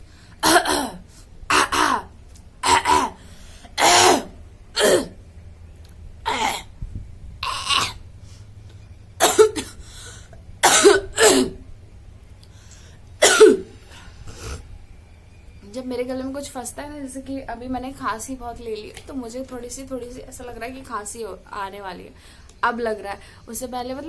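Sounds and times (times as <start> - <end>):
woman coughing: 0.4 - 3.2, 3.8 - 5.2, 6.3 - 6.7, 7.4 - 8.0, 9.2 - 9.8, 10.6 - 11.6, 13.2 - 13.8.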